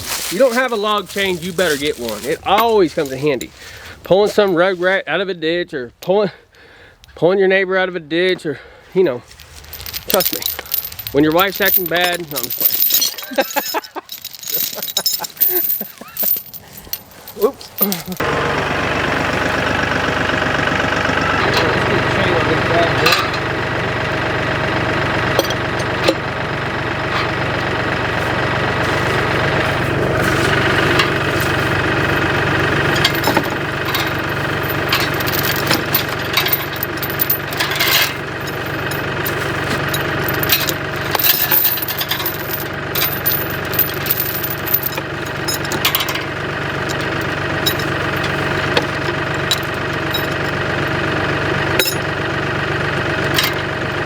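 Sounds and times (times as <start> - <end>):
engine running steadily: 0.0 - 4.6, 8.6 - 54.0
sharp clicks and metal knocks: 22.9 - 23.6, 25.1 - 27.8, 30.5 - 52.2, 53.1 - 54.0.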